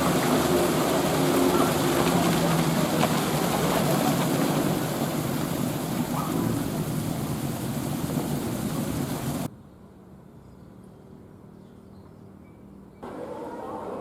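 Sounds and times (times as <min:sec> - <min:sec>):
train rushing past: 0:00.0 - 0:09.5, 0:13.0 - 0:14.0.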